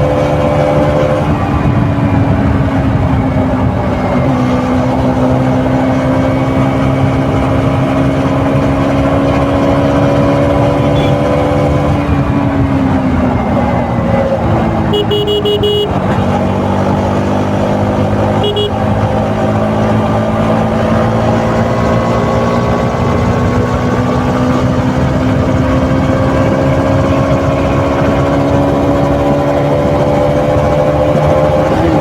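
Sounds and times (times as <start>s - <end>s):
motorcycle engine rising in pitch: 0.0s - 32.0s
horn honking: 10.8s - 11.5s, 14.8s - 16.6s, 18.2s - 19.2s.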